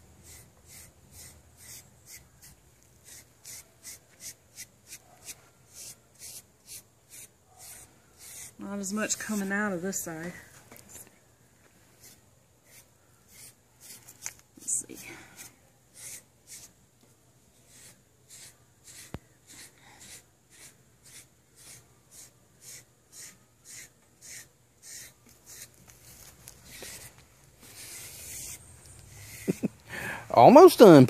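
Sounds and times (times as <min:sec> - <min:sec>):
blade brushing dog's coat: 0:17.7 - 0:29.7.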